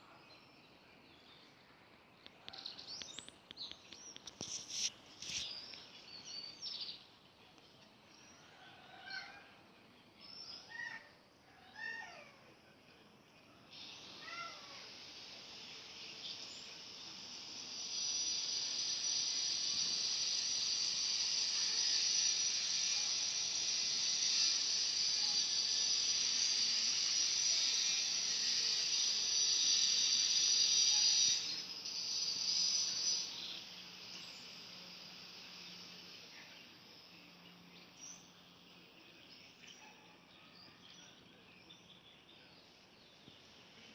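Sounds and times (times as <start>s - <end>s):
bird chirps: 13.4s - 43.9s.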